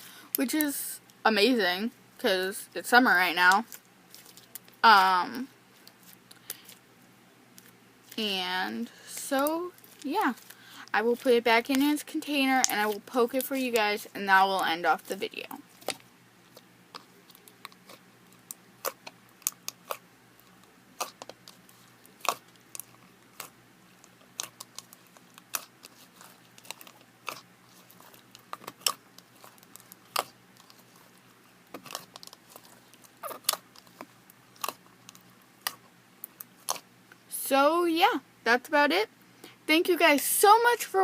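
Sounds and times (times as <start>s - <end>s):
slime squishing and popping: 15.8s - 31.1s, 31.7s - 36.8s.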